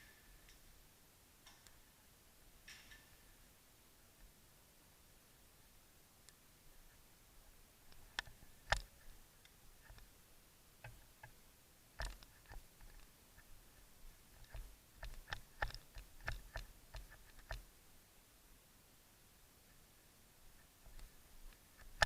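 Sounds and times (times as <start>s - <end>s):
sharp clicks and snaps: 14.4s - 17.6s.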